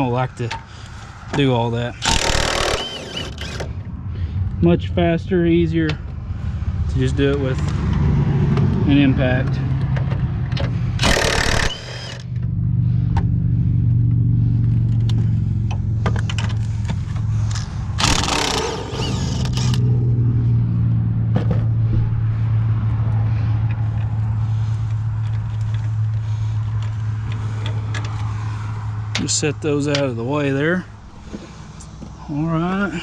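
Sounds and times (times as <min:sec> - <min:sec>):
tools and parts clicking: 0:02.0 - 0:03.7, 0:09.9 - 0:12.3, 0:16.1 - 0:19.9
impact wrench zipping: 0:02.0 - 0:03.8, 0:11.0 - 0:12.4, 0:16.5 - 0:20.0.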